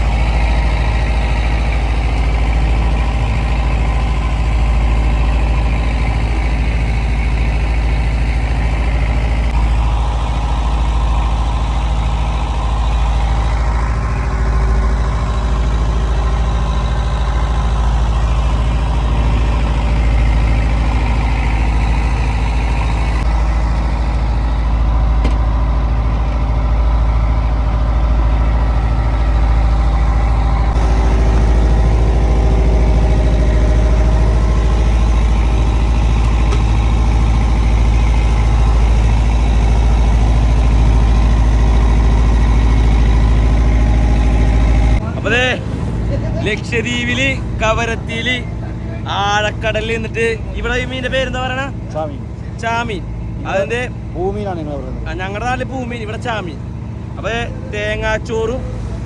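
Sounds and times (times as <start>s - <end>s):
boat engine droning: 0.0s - 59.0s.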